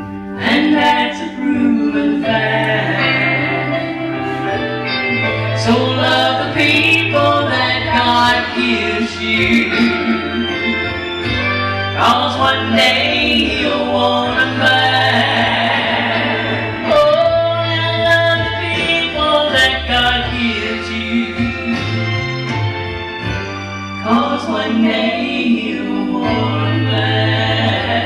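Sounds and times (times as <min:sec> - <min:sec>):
gospel singing with accompaniment: 0:00.0 - 0:28.0
steady bass line: 0:00.0 - 0:28.0.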